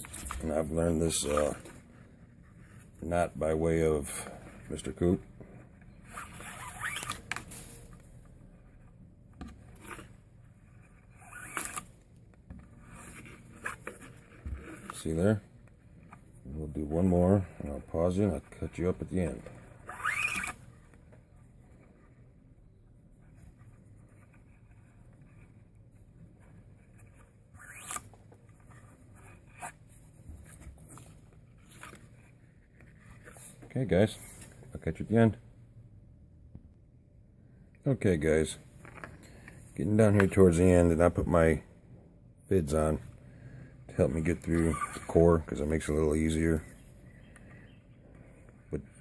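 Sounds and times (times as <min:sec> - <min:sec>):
cord rustling and sliding: 0:00.0 - 0:03.4, 0:04.0 - 0:22.3, 0:23.2 - 0:34.8
cord zip: 0:06.0 - 0:07.3, 0:11.1 - 0:11.9, 0:19.8 - 0:20.6, 0:27.6 - 0:28.1.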